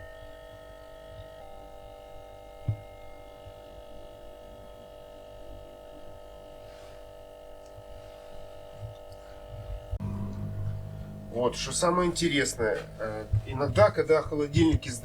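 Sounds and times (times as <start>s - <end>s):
refrigerator compressor humming whine: 0.0s - 15.0s
low knock: 12.6s - 14.9s.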